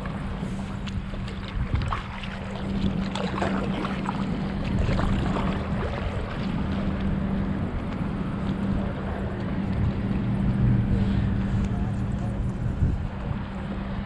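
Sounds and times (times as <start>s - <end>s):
paddle splashing in water: 0.0s - 10.0s
steady low hum: 0.0s - 14.0s.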